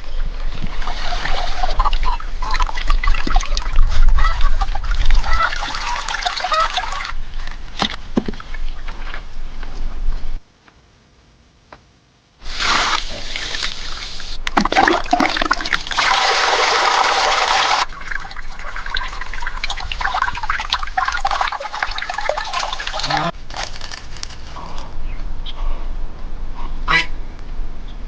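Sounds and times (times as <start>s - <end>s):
water sloshing and splashing: 0.5s - 8.9s, 12.5s - 23.4s.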